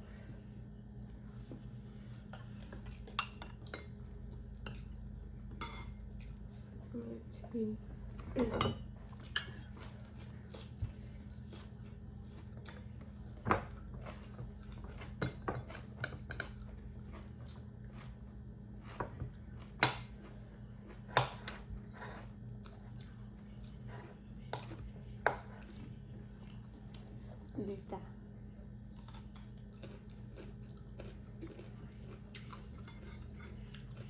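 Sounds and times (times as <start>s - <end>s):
steady low hum: 0.0s - 34.0s
spoons clinking against bowls: 3.0s - 4.0s, 8.4s - 9.8s.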